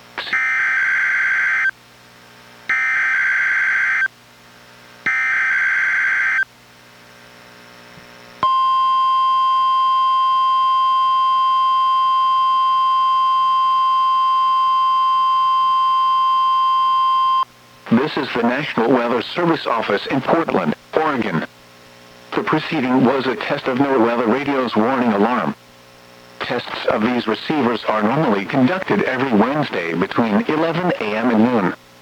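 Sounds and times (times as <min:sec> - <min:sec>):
steady warning alarm tone: 0:00.2 - 0:01.7, 0:02.7 - 0:04.1, 0:05.1 - 0:06.4, 0:08.4 - 0:17.5.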